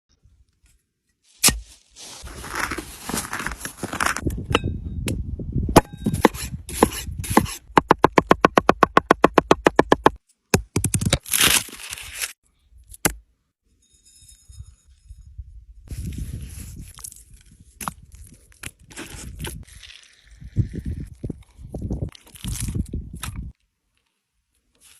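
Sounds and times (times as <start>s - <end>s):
knocks and scrapes: 5.9s - 7.7s.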